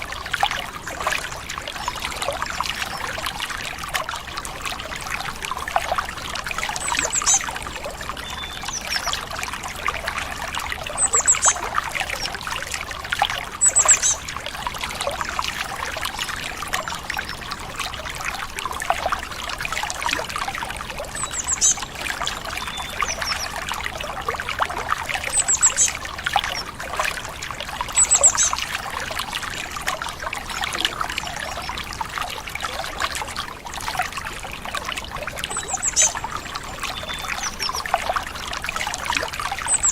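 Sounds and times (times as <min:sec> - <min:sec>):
stream water trickling: 0:00.0 - 0:39.9
bird chirping: 0:36.9 - 0:37.8.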